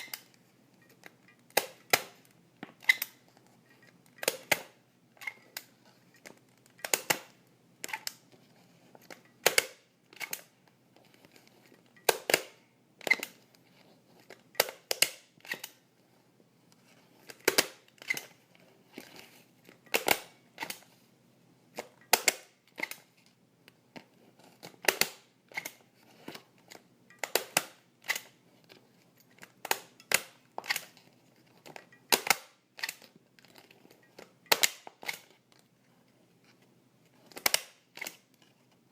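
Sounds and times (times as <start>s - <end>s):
stapler springing back clicks: 6.8s - 8.2s, 27.1s - 28.3s, 32.1s - 33.1s, 34.2s - 35.3s
stapler snapping: 34.5s - 35.2s.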